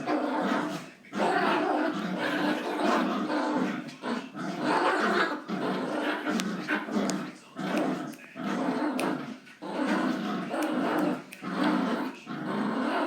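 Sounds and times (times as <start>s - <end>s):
dogs growling: 0.0s - 13.0s.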